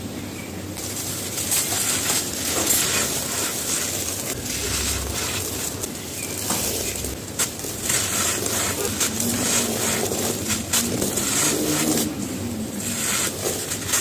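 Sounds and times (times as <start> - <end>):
cement chunks crunching: 0.8 - 14.0.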